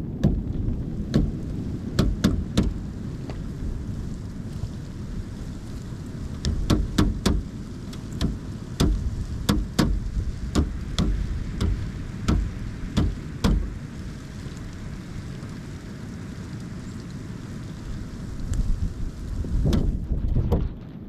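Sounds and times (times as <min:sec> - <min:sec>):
low wind rumble: 0:00.0 - 0:21.0
woodpecker pecking wood: 0:00.2 - 0:02.8, 0:06.4 - 0:13.8.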